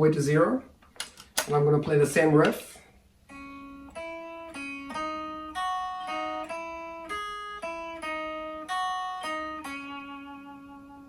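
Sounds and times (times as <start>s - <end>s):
guitar picked riff: 3.3s - 11.0s.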